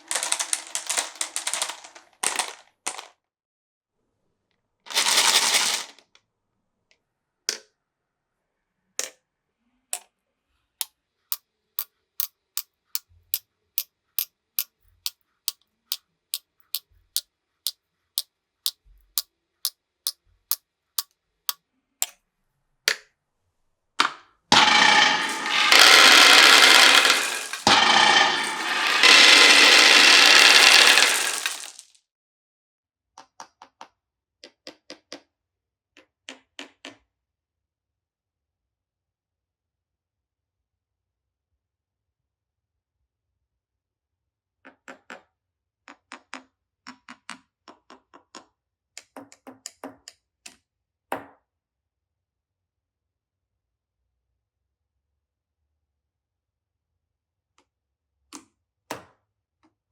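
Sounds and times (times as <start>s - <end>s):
marbles clacking on wooden run: 0.0s - 2.5s, 24.6s - 31.8s
marbles rolling rush: 0.0s - 3.0s, 5.0s - 5.9s, 24.6s - 31.9s.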